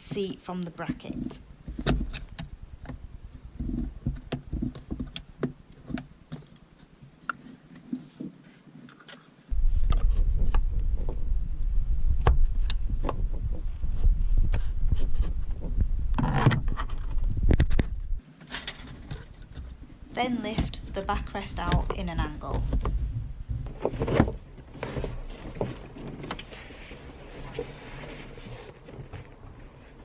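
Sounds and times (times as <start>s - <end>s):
loud low rumble: 9.5s - 18.2s.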